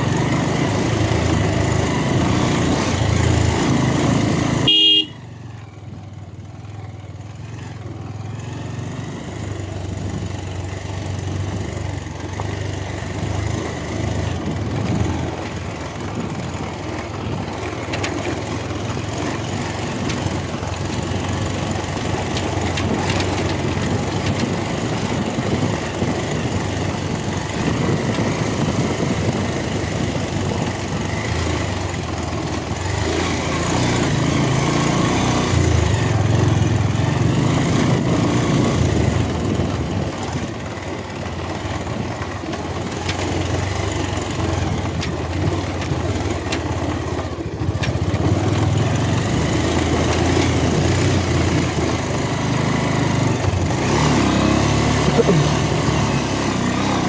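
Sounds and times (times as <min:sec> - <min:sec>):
motorcycle engine: 0:00.0 - 0:57.0
motorcycle horn toot: 0:04.6 - 0:05.4
wind noise: 0:22.9 - 0:31.3.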